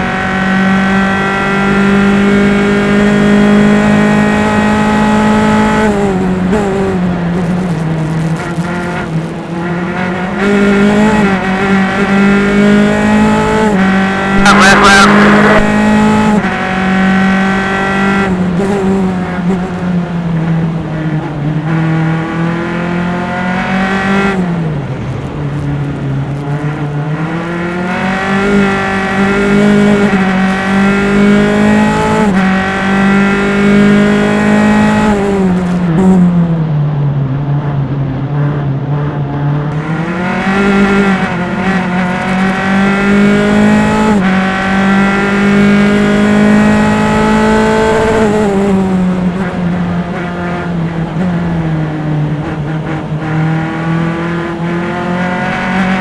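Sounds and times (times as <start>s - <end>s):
race car engine at high revs: 0.0s - 56.0s.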